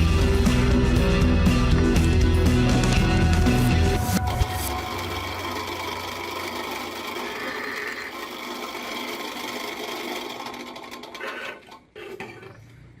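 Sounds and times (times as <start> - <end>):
small machine mechanical chatter: 4.2 - 12.0.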